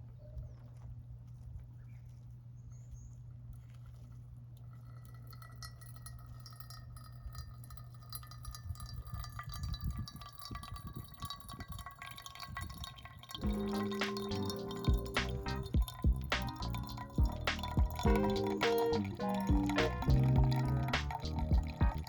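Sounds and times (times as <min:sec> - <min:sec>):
music: 0:13.4 - 0:22.0
steady low hum: 0:13.4 - 0:22.0.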